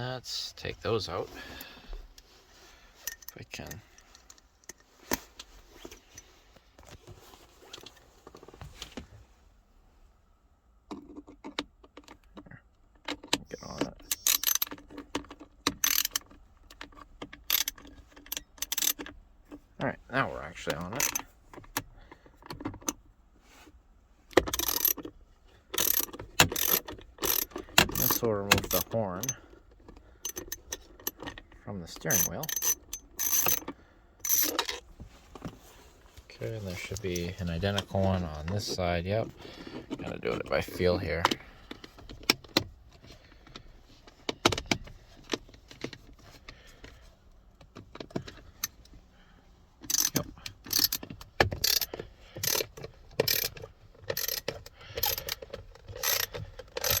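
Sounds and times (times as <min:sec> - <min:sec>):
hand ratchet clicking: 0:13.5 - 0:14.8, 0:15.7 - 0:16.3, 0:17.4 - 0:19.1, 0:21.0 - 0:21.2, 0:24.4 - 0:25.0, 0:25.8 - 0:29.4, 0:32.1 - 0:34.7, 0:49.8 - 0:57.0.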